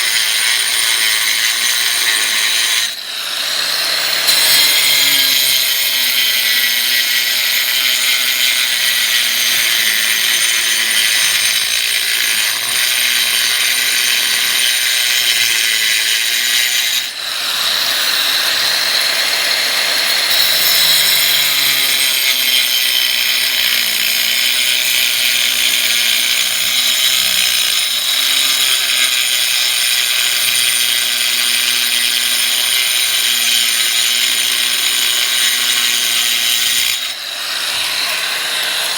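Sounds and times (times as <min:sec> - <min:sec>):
power tool whining: 0:00.0 - 0:38.9.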